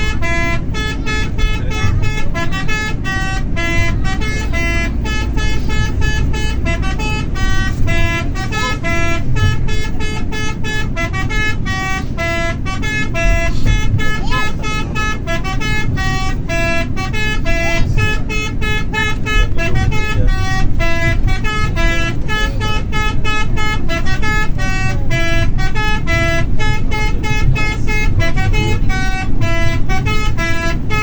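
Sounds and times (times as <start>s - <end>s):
low rumble: 0.0s - 31.0s
multi-tone bus horn tune: 0.0s - 31.0s.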